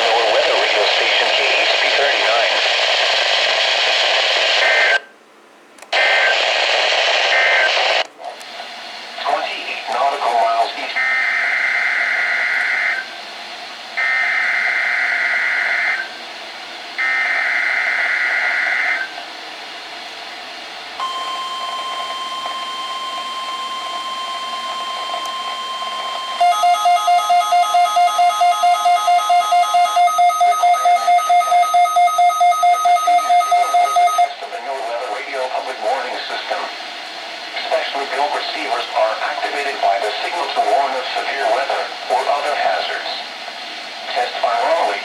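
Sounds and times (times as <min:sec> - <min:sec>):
steady warning alarm tone: 0:17.0 - 0:19.2, 0:21.0 - 0:34.4
rapid electronic alarm beeping: 0:21.0 - 0:34.4
screeching data bursts: 0:21.0 - 0:34.4.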